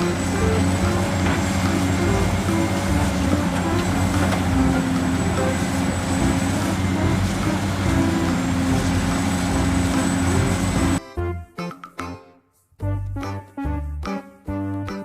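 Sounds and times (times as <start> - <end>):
motor running with whine: 0.0 - 11.0.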